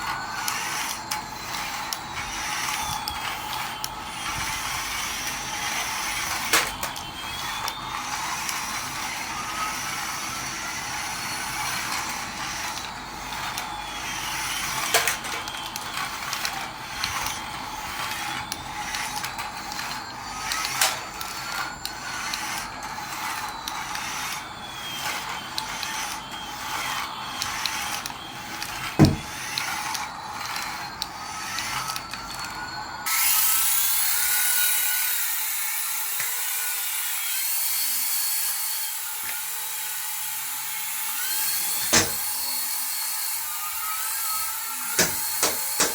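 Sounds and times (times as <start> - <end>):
ratcheting clicks of plastic gears: 0.0 - 32.5
toy motor whirring: 0.0 - 45.9.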